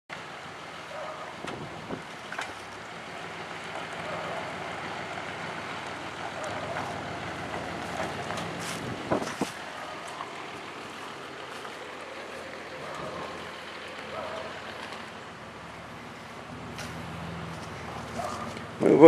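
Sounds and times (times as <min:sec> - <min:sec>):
vehicle engine running: 0:00.1 - 0:19.0
wind on microphone: 0:01.4 - 0:02.2, 0:08.6 - 0:09.6.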